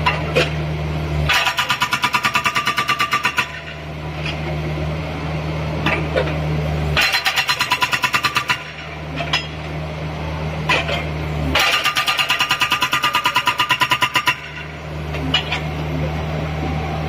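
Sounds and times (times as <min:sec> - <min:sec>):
excavator engine running: 0:00.0 - 0:17.0
hydraulic breaker hammering: 0:01.3 - 0:03.8, 0:07.0 - 0:09.7, 0:10.7 - 0:15.7.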